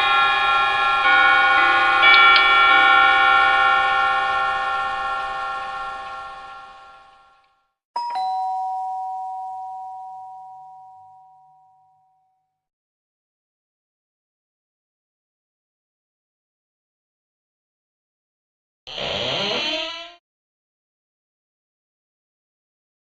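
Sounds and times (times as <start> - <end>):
bell-like chimes ringing: 0.0 - 7.1, 8.0 - 12.3
doorbell ding-dong chime: 0.0 - 7.4, 8.0 - 12.4.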